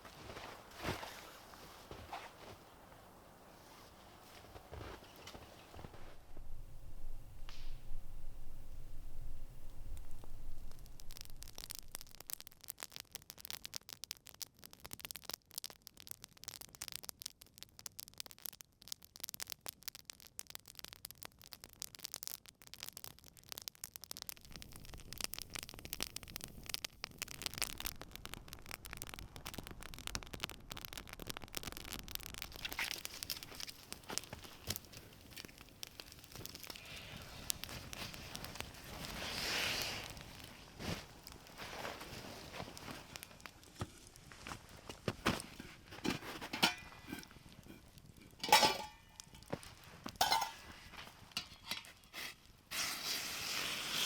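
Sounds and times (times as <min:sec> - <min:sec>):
campfire crackling: 0:00.0 - 0:54.0.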